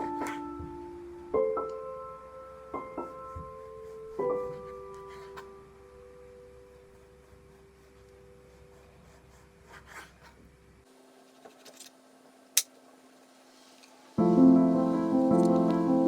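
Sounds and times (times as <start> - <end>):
piano music: 0.0 - 7.2, 14.2 - 16.0.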